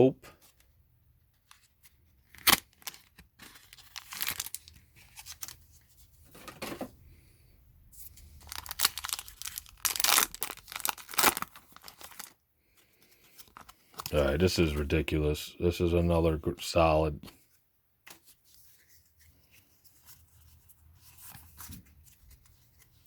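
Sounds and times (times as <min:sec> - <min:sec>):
wrapper crinkling: 0:01.4 - 0:05.6, 0:08.2 - 0:12.4, 0:13.1 - 0:14.8
foil pack tearing: 0:02.3 - 0:04.7, 0:08.4 - 0:12.3.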